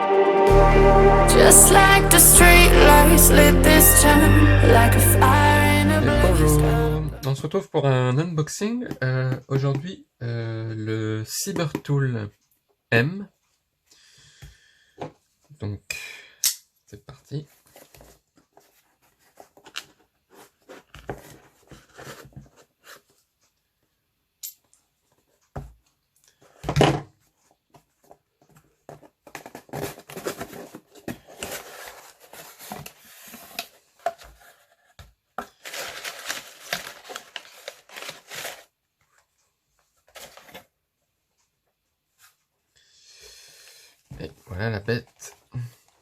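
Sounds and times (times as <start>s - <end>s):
packaging rustling and tearing: 29.0s - 34.7s, 35.4s - 38.9s, 39.9s - 40.7s
packaging clicks and handling: 35.4s - 38.7s.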